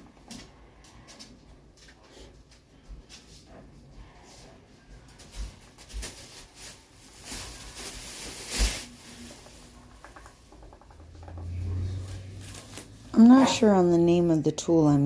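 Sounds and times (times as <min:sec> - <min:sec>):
low hum: 0:10.8 - 0:14.6.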